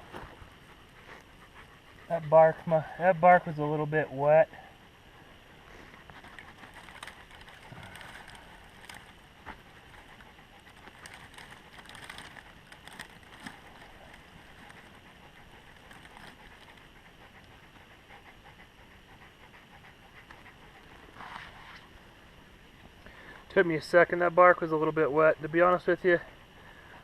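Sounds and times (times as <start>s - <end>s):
tinder crackling: 5.2s - 17.7s.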